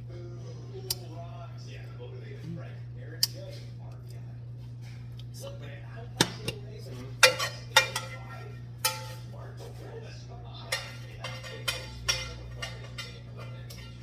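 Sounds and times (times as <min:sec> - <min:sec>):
steady low hum: 0:00.0 - 0:14.0
metal utensil clinking on pot: 0:06.2 - 0:09.4, 0:10.7 - 0:14.0.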